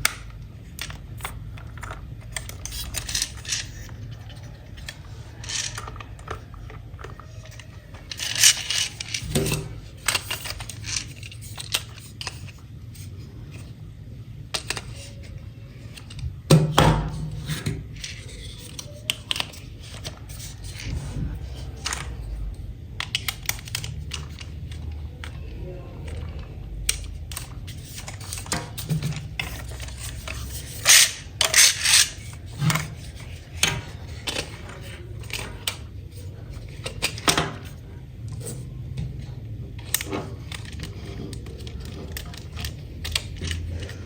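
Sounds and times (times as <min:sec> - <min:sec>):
toy packaging rustling: 0:00.0 - 0:13.7, 0:17.9 - 0:38.6, 0:39.2 - 0:44.0
plastic clicks: 0:14.5 - 0:44.0.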